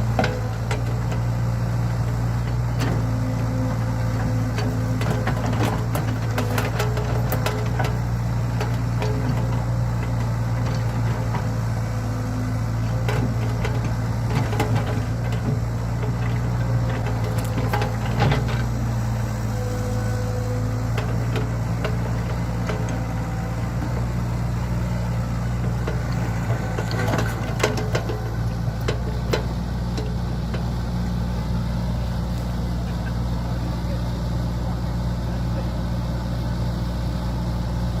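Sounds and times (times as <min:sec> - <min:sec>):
diesel engine running: 0:00.0 - 0:38.0.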